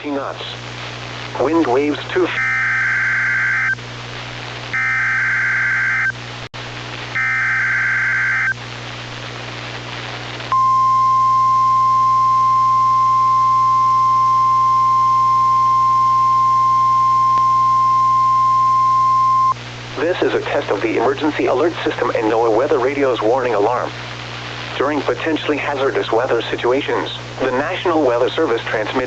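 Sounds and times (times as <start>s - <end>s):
radio hiss: 0.0s - 10.7s, 18.4s - 29.0s
buzzy data bursts: 1.0s - 3.9s, 4.7s - 6.3s, 7.1s - 8.6s
steady alarm tone: 2.3s - 3.8s, 4.8s - 6.2s, 7.2s - 8.5s.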